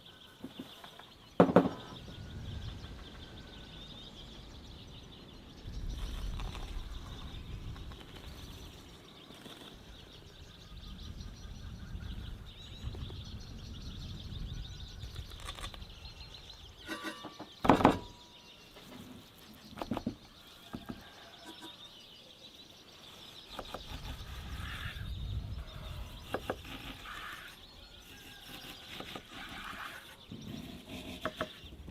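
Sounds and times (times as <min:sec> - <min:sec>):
faint bird chirping: 0:00.0 - 0:31.9
sharp knocks: 0:01.4 - 0:01.9, 0:16.9 - 0:18.2.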